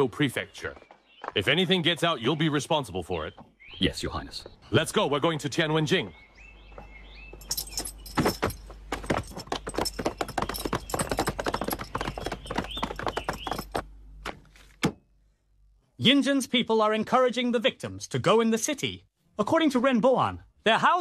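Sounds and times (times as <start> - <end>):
harness jingling: 7.2 - 13.9
horse hooves clopping on road: 7.4 - 14.3.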